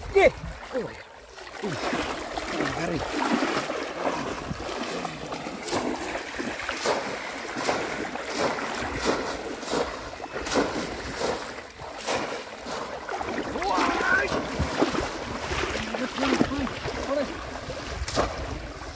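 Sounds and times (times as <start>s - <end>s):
river water splashing: 0.0s - 18.9s
wind buffeting microphone: 2.2s - 6.2s, 13.1s - 18.9s.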